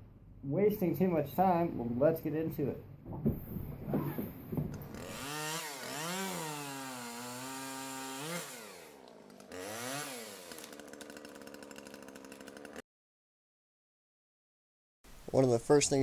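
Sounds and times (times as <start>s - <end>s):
fast fine ticking: 9.3s - 12.8s.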